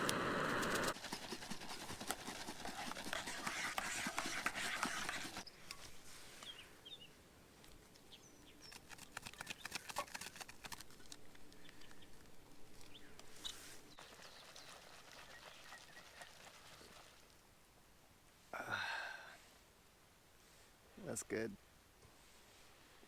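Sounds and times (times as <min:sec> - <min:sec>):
campfire crackling and popping: 0:00.0 - 0:01.0
faint bird chirps: 0:12.8 - 0:16.7.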